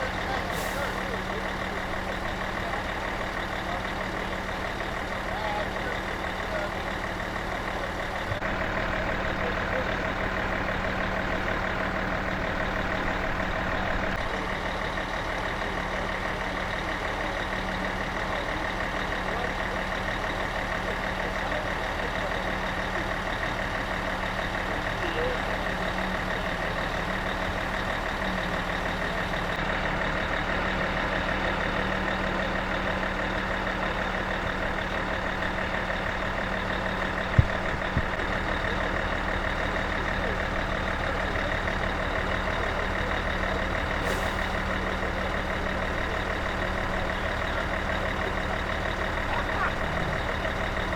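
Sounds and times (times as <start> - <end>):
boat engine running: 44.7 - 50.9.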